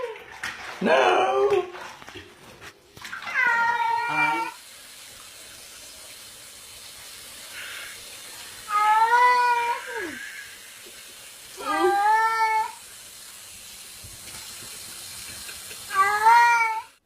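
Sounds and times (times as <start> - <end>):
cat meowing: 3.2 - 4.6, 15.9 - 17.0.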